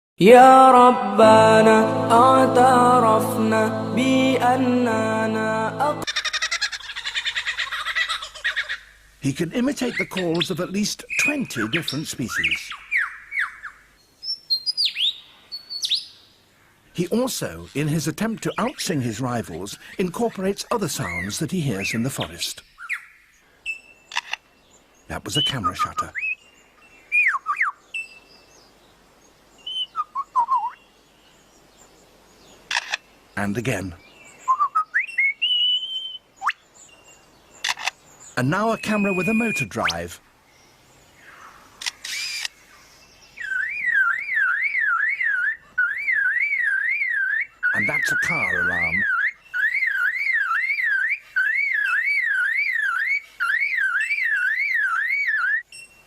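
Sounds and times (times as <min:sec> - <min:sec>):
lyrebird whistling calls: 0:25.3 - 0:26.4, 0:27.1 - 0:28.2, 0:29.6 - 0:30.8, 0:34.4 - 0:36.6, 0:37.6 - 0:40.2, 0:41.8 - 0:42.6, 0:43.4 - 0:55.9
bird mimicking a car alarm: 0:38.6 - 0:40.1, 0:43.4 - 0:55.7.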